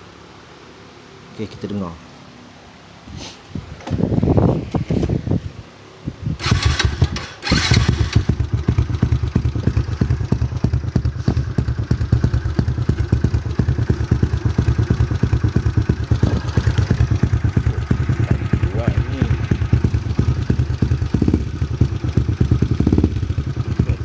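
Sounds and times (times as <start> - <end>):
short bursts of noise: 6.4 - 8.3
motorcycle engine idling: 6.4 - 24.0.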